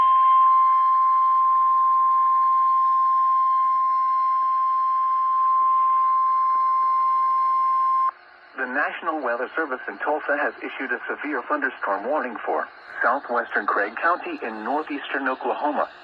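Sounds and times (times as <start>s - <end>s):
steady alarm tone: 0.0s - 16.0s
faint radio hiss: 8.1s - 16.0s.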